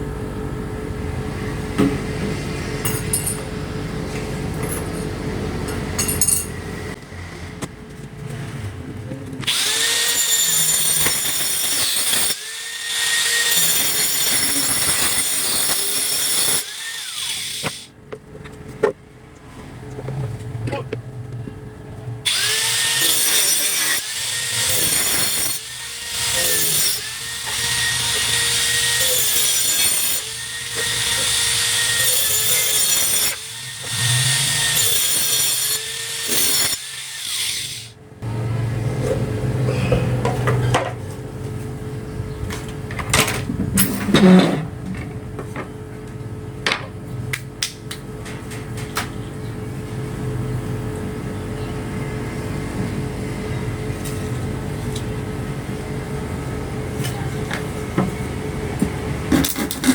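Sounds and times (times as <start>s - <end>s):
steady low hum: 0.0s - 9.4s
hand saw cutting plywood: 22.3s - 37.8s, 59.3s - 59.9s.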